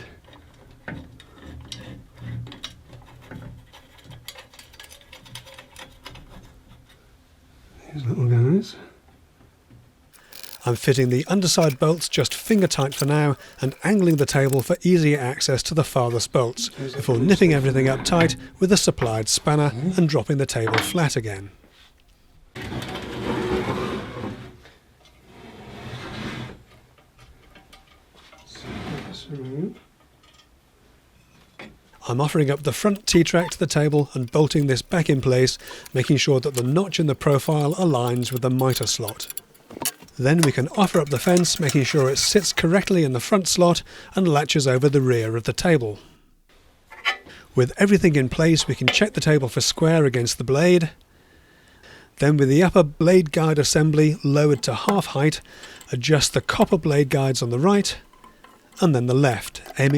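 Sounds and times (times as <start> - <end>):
small metal parts clicking: 10.2 - 16.8, 32.0 - 46.1, 53.6 - 59.9.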